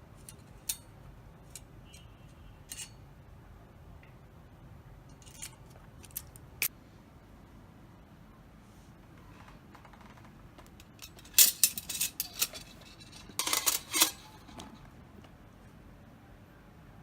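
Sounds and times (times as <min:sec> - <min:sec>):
light metal clinking: 0:10.8 - 0:14.7.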